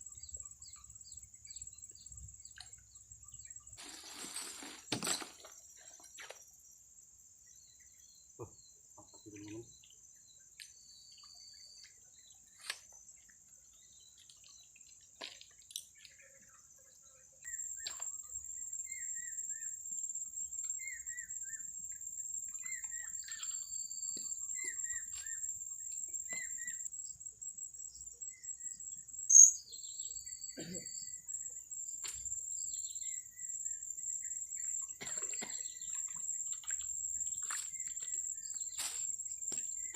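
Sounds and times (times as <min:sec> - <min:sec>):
insects trilling: 0:00.0 - 0:39.9
birds chirping: 0:17.4 - 0:27.2, 0:27.9 - 0:39.9.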